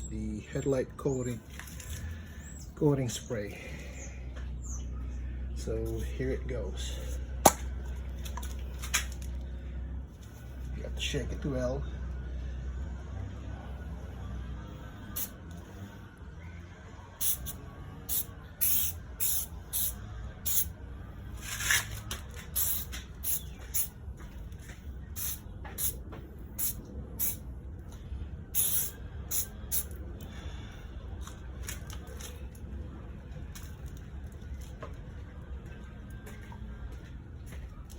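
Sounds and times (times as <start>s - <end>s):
low steady rumble: 0.0s - 37.9s
aerosol can spraying: 17.2s - 20.7s, 22.5s - 23.9s, 25.2s - 26.0s, 26.6s - 27.4s, 28.6s - 29.9s.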